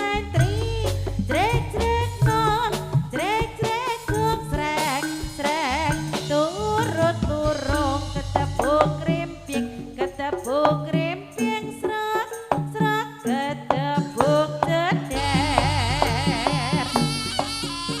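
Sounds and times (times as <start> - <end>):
hand drum beat: 0.0 - 11.7, 12.5 - 18.0
ornamented melody line: 0.0 - 11.8, 14.0 - 18.0
deep bass: 0.1 - 4.7, 5.8 - 10.4, 15.1 - 17.3.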